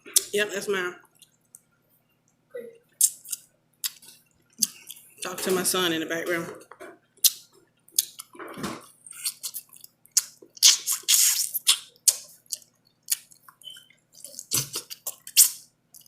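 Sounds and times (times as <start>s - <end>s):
wet chewing of soft food: 2.9s - 5.2s, 7.2s - 16.0s.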